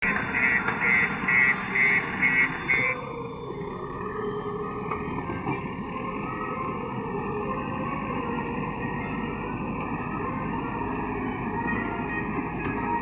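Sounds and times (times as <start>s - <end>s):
reversing alarm beeping: 0.0s - 3.6s
diesel engine under work: 0.0s - 13.0s.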